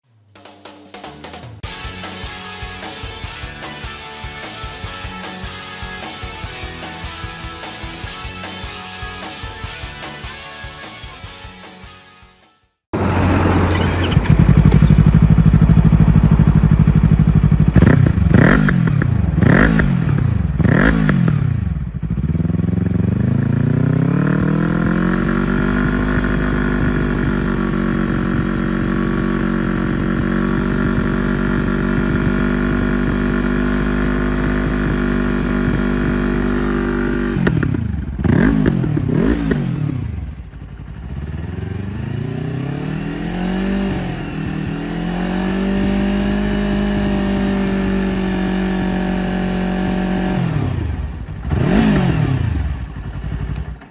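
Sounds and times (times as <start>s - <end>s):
motorcycle engine revving: 13.0s - 53.9s.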